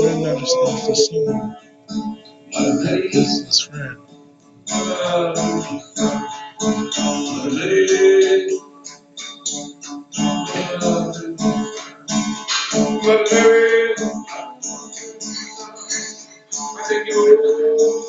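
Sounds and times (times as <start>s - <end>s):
person singing held notes: 0.0s - 1.4s, 3.0s - 4.0s
acoustic guitar strumming: 0.0s - 18.0s.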